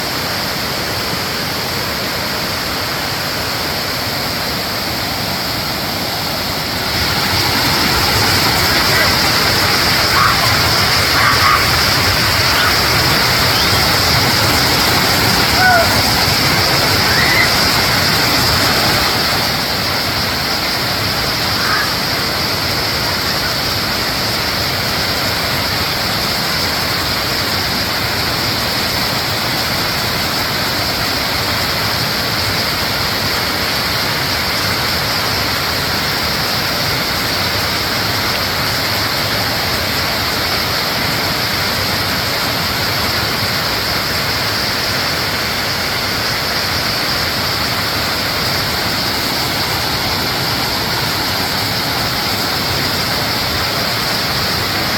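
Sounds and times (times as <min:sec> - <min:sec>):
waterfall rushing: 0:00.0 - 0:54.9.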